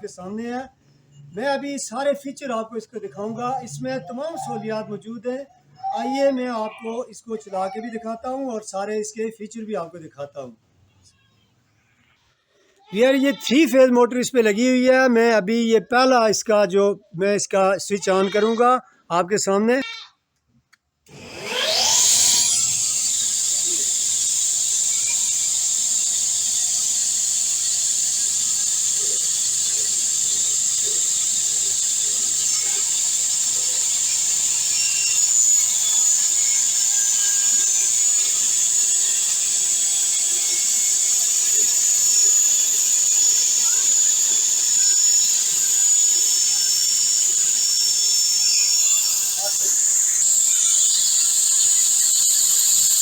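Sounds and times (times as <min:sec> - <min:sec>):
table saw running: 0:21.1 - 0:53.0.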